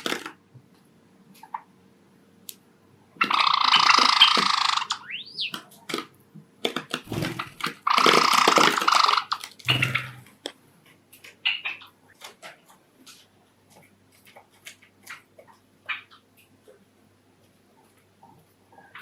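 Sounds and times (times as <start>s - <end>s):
sparrows chirping: 3.2s - 5.6s.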